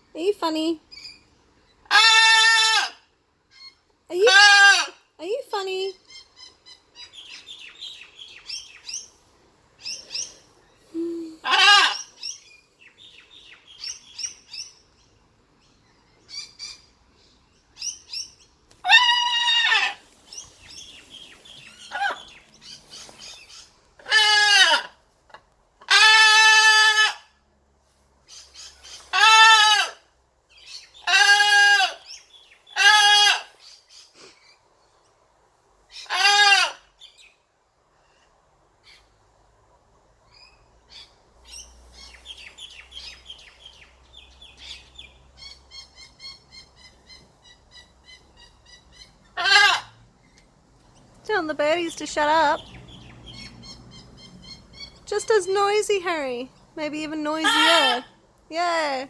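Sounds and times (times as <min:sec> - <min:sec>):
macaw soft chirps and chatter: 0:03.5 - 0:09.2, 0:09.8 - 0:14.8, 0:51.5 - 0:59.0
macaw harsh squawks: 0:11.4 - 0:12.4, 0:21.6 - 0:25.0, 0:30.7 - 0:34.3, 0:35.9 - 0:36.9, 0:49.0 - 0:50.0, 0:57.4 - 0:58.2.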